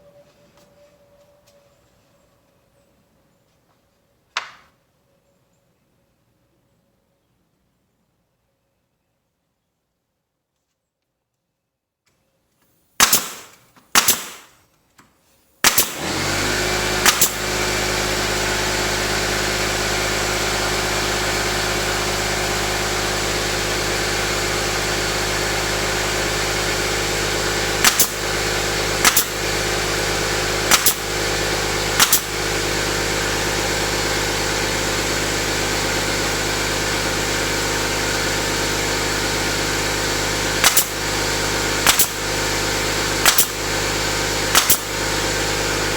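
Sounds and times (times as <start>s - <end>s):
sharp gunshots: 13.0s - 14.6s, 15.6s - 16.2s, 17.0s - 17.6s, 27.8s - 28.4s, 29.0s - 29.6s, 30.6s - 31.2s, 31.9s - 32.5s, 40.6s - 41.0s, 41.8s - 42.3s, 43.2s - 43.6s, 44.5s - 45.0s
motor running steadily: 15.7s - 45.9s.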